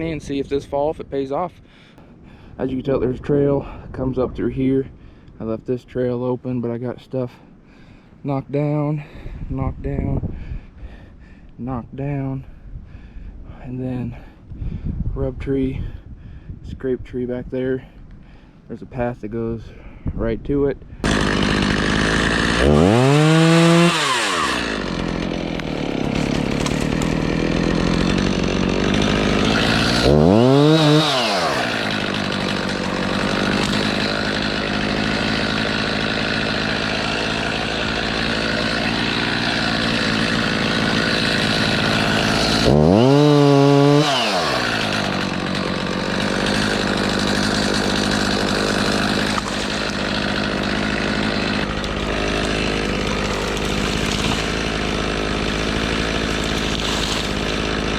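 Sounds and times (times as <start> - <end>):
chainsaw revving: 21.0 - 57.9.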